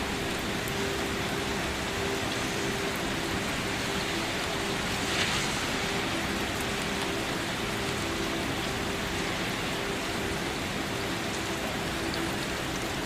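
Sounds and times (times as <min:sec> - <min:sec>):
steady rain falling: 0:00.0 - 0:13.0.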